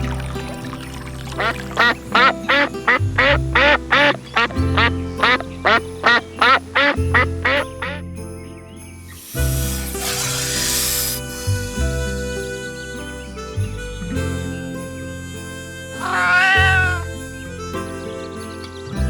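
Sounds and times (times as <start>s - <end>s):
piano music: 0.0s - 19.0s
rapid animal calls: 1.4s - 8.0s, 16.0s - 17.0s
burst of hiss: 9.0s - 12.9s.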